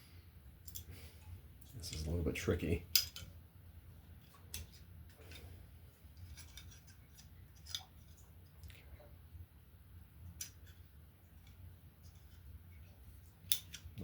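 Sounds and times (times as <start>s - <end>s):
small steel parts clicking: 0.6s - 0.9s, 2.9s - 3.3s, 13.5s - 14.0s.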